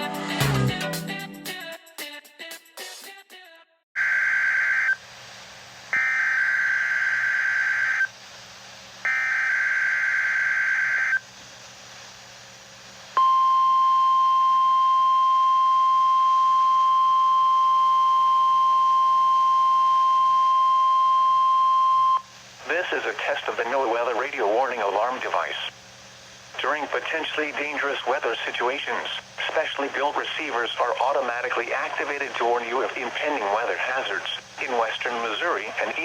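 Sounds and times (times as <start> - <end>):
steady warning alarm tone: 6.0 - 8.1, 9.1 - 11.2.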